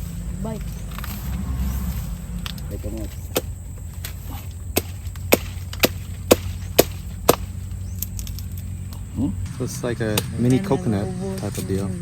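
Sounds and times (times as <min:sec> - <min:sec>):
steady low rumble: 0:00.0 - 0:12.0
blade chopping fruit: 0:03.2 - 0:08.1.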